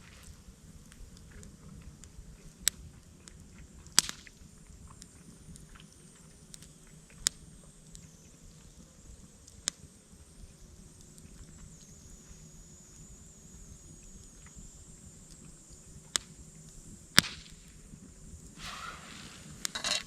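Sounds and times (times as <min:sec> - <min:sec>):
loud pops from fire: 0:00.0 - 0:05.8, 0:15.3 - 0:20.0
campfire crackling: 0:00.0 - 0:20.0.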